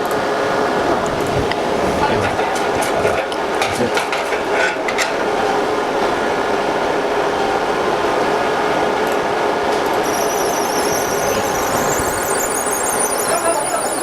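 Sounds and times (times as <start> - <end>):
machine mechanical hum: 0.0 - 14.0
high-pitched machine whine: 9.9 - 14.0.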